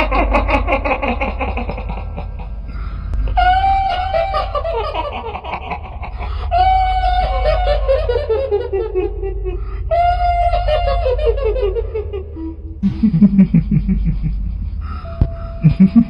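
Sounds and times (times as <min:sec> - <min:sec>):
steady low drone: 0:00.0 - 0:16.0
woman's shrill ghost laugh: 0:03.4 - 0:09.2, 0:15.6 - 0:16.0.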